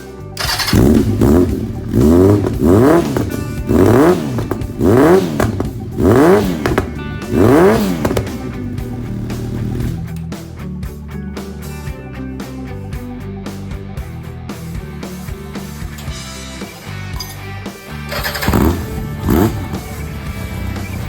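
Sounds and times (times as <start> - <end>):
motorcycle engine revving: 0.4 - 10.2, 18.0 - 21.0.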